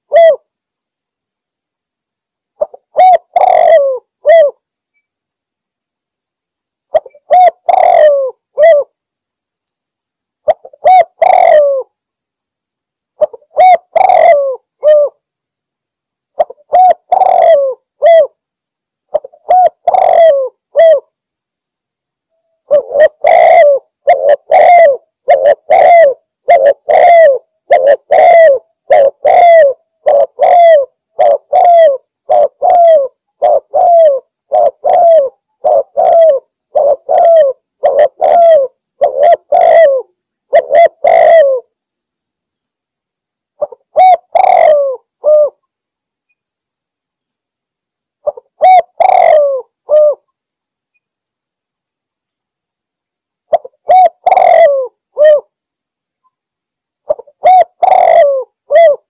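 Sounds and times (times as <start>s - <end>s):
dove cooing: 0.0s - 0.5s, 2.6s - 4.6s, 6.9s - 8.9s, 10.5s - 11.9s, 13.2s - 15.2s, 16.4s - 18.4s, 19.1s - 21.1s, 22.6s - 41.7s, 43.6s - 45.6s, 48.2s - 50.3s, 53.5s - 55.5s, 57.1s - 59.0s.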